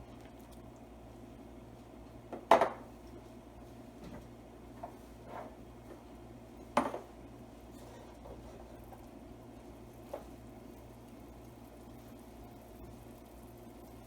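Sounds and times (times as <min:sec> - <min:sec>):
steady low hum: 0:00.0 - 0:14.0
light taps and scrapes: 0:04.0 - 0:06.0.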